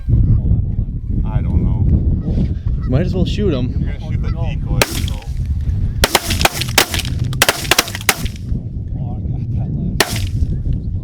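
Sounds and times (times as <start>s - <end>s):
volley of shotgun shots: 4.8s - 5.4s, 6.0s - 8.4s, 10.0s - 10.4s.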